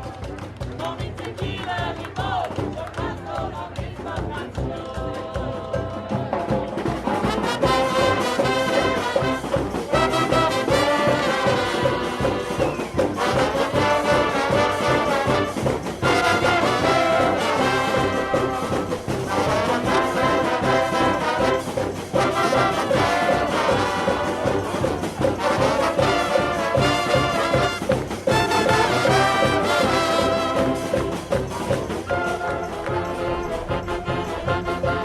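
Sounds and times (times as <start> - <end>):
brass music over steady beat: 7.0 - 35.0.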